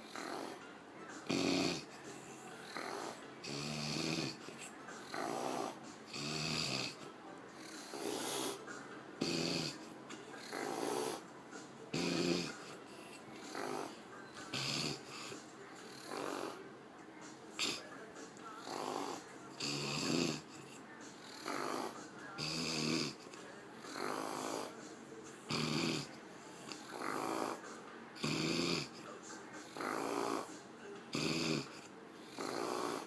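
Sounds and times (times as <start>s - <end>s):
woman snoring: 0.0s - 0.6s, 1.2s - 11.2s, 11.9s - 16.6s, 18.6s - 24.8s, 25.5s - 27.6s, 28.2s - 29.0s, 29.7s - 30.5s, 31.1s - 33.0s.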